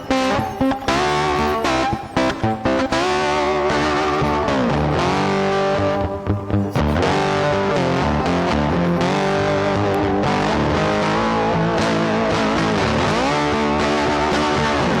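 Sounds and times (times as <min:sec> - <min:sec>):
distorted electric guitar: 0:00.0 - 0:15.0
rock music: 0:00.0 - 0:15.0.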